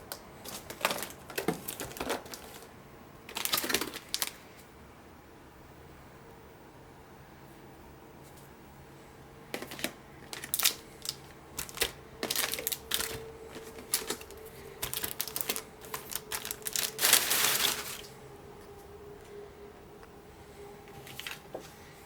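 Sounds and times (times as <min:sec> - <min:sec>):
card packaging rustling: 0:00.4 - 0:02.7, 0:03.3 - 0:04.4, 0:09.6 - 0:18.2, 0:21.0 - 0:21.4.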